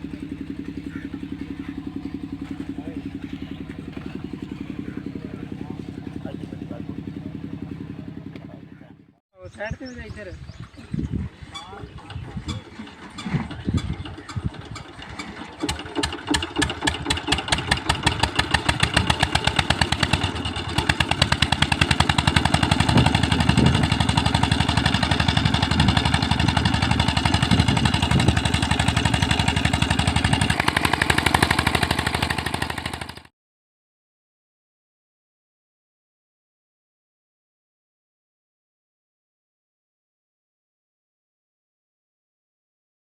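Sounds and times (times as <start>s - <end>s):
engine chugging: 0.0s - 33.3s.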